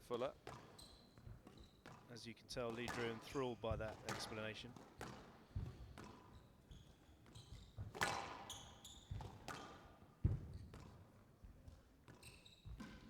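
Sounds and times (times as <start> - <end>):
shoes squeaking on court floor: 0.0 - 13.0
squash ball hitting walls: 0.5 - 2.1, 2.8 - 6.4, 7.7 - 11.1.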